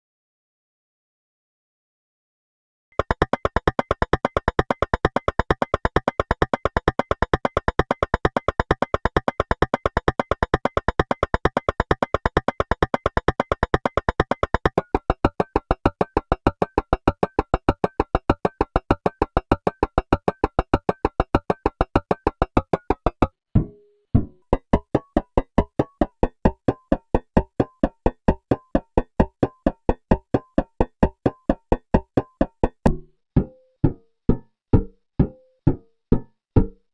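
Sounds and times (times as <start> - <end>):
synthesized percussive hits: 3.0 - 23.8.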